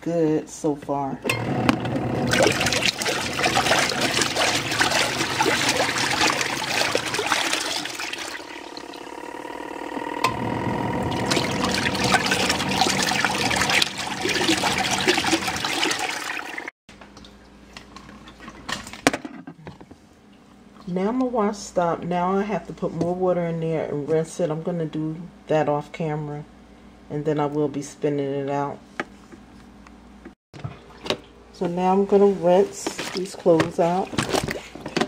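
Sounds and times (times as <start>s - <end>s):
washing machine motor hum: 1.3s - 16.7s
water sloshing in washing machine: 1.4s - 9.3s, 10.0s - 19.1s, 30.6s - 35.0s.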